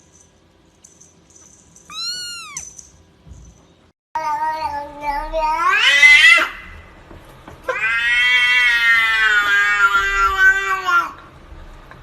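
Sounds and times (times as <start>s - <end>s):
cat yowling: 1.9s - 2.7s.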